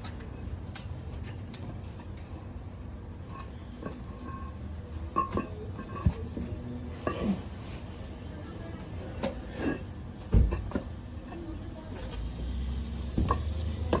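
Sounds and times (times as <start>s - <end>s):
concrete pavers clinking: 0.0s - 7.6s, 10.4s - 14.0s
heavy thump: 13.2s - 14.0s.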